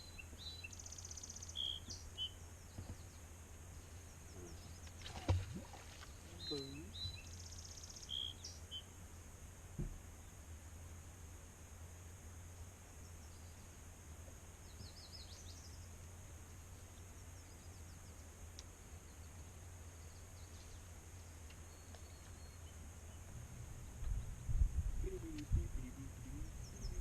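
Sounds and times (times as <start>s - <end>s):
faint bird chirps: 0.0s - 3.2s, 3.8s - 9.0s, 18.9s - 24.3s, 25.0s - 27.0s
high insect hum: 0.0s - 27.0s
low wind rumble: 22.7s - 27.0s.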